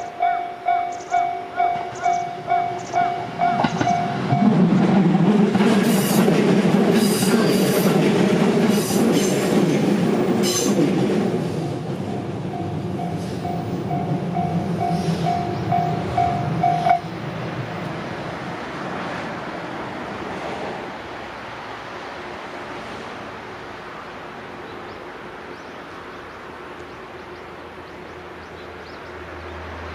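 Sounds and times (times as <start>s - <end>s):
crossing warning bell ringing: 0.0s - 4.6s, 11.5s - 17.1s
electric train rumbling: 0.0s - 29.9s
train wheels clicking: 0.9s - 17.0s.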